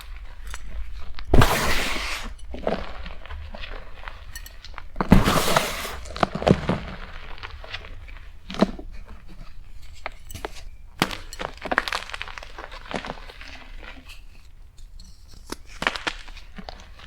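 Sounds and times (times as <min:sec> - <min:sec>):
chalk block crunching and cracking: 0:01.0 - 0:09.3, 0:11.0 - 0:14.2.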